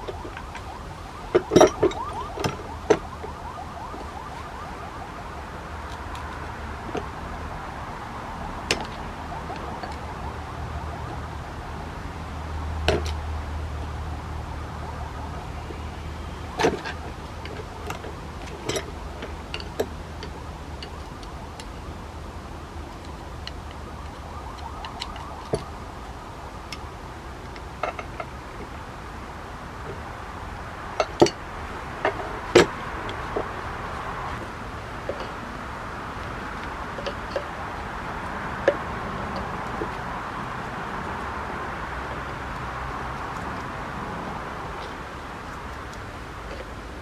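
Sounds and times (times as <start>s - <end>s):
metal vise parts knocking: 1.3s - 3.0s.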